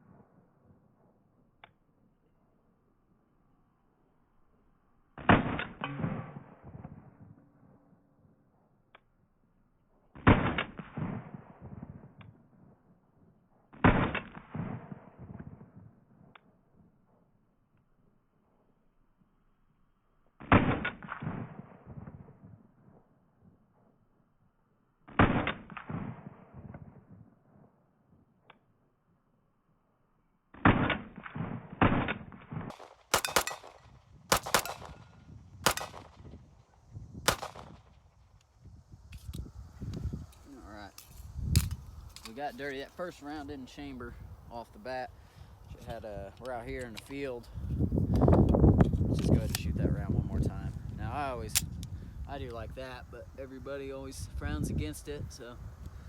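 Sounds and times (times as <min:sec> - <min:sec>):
gunshot echo rolling away: 0:05.2 - 0:08.3, 0:30.5 - 0:38.5
pistol shots: 0:30.5 - 0:36.5, 0:37.2 - 0:38.0.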